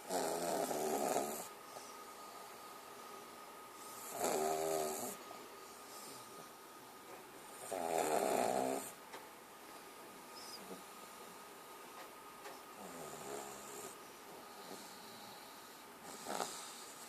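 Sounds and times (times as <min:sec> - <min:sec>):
piglet snoring: 0:00.0 - 0:01.5, 0:03.9 - 0:05.2, 0:07.5 - 0:09.0, 0:12.8 - 0:14.0, 0:14.6 - 0:17.0.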